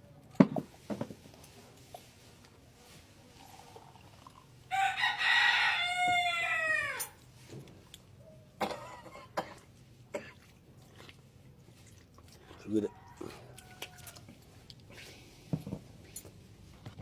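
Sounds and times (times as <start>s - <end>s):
rooster crowing: 4.7s - 7.2s, 12.8s - 14.3s.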